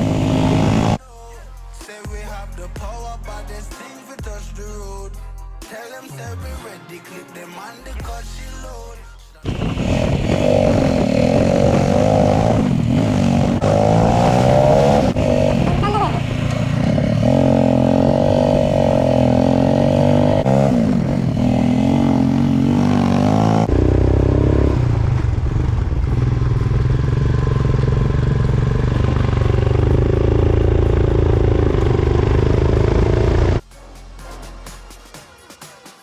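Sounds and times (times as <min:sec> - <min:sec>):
motorcycle engine running: 0:00.0 - 0:01.0, 0:09.5 - 0:33.6.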